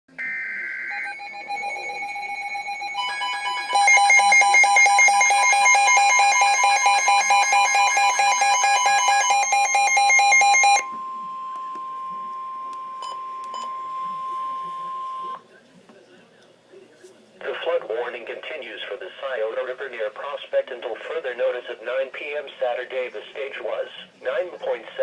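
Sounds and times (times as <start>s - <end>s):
rapidly pulsing electronic alarm: 0.1s - 15.4s
steady electronic tones: 0.1s - 15.4s.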